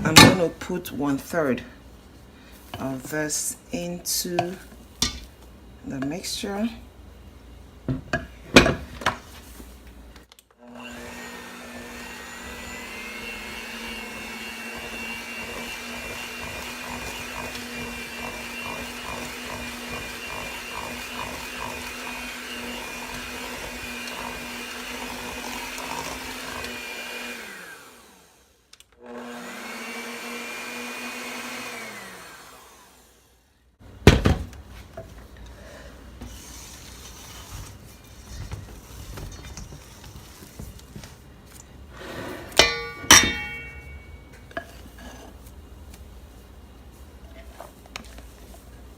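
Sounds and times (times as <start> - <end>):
electric mixer running: 10.6 - 33.5
utensils knocking against bowl: 42.6 - 44.8.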